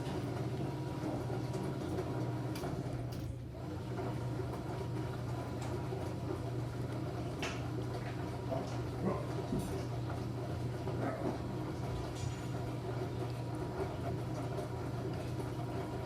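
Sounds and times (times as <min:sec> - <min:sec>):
washing machine motor humming: 0:00.0 - 0:16.0.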